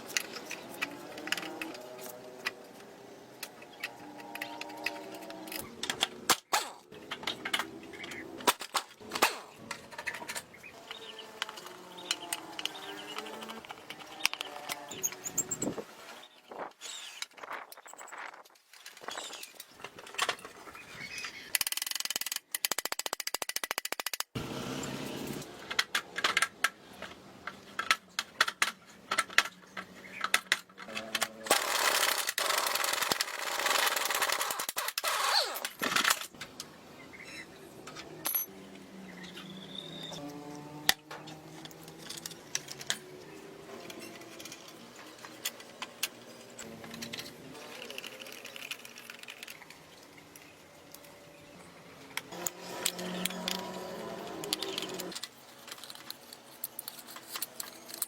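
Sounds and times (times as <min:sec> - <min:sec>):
metal tools clinking and knocking: 0:37.8 - 0:38.6.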